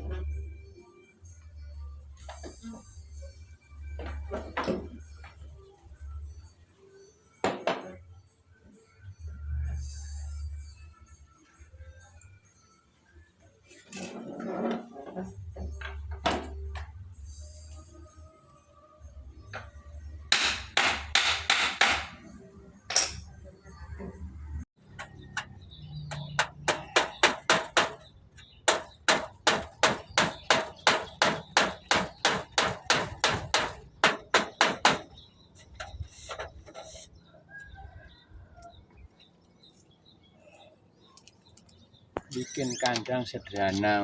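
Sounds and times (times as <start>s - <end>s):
hammer blows: 24.9s - 28.1s, 28.7s - 37.0s.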